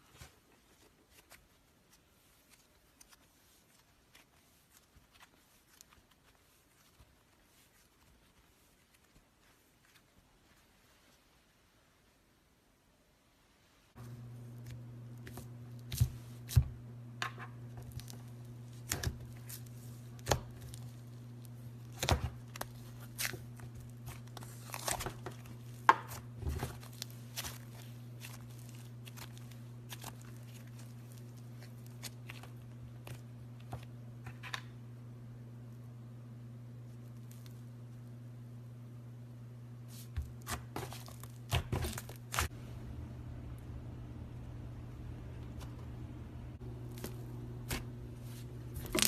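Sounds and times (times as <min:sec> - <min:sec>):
steady low hum: 0:13.9 - 0:49.0.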